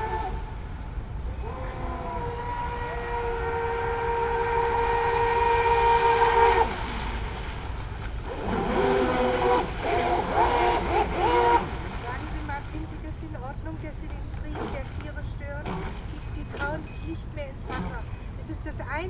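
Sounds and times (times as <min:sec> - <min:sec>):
electric boat motors whining: 0:08.2 - 0:12.4, 0:15.6 - 0:18.4.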